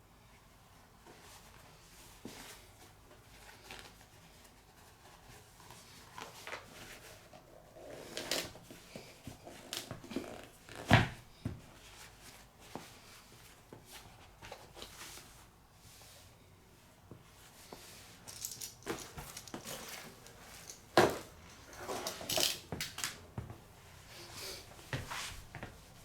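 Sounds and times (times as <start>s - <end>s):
shoe box rustles and taps: 18.8s - 21.4s.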